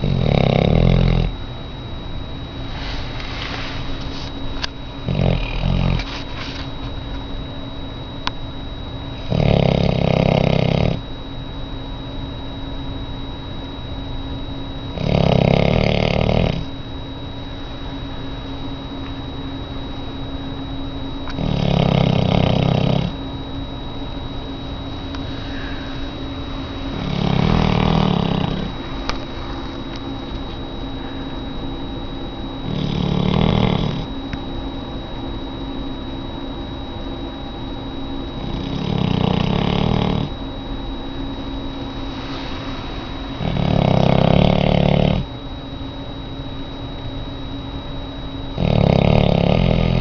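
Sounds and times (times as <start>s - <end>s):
dog snoring: 0.0s - 1.4s, 5.0s - 6.7s, 9.2s - 11.0s, 14.9s - 16.7s, 21.2s - 23.2s, 26.9s - 29.3s, 32.6s - 34.1s, 38.4s - 40.4s, 42.3s - 45.3s, 48.5s - 50.0s.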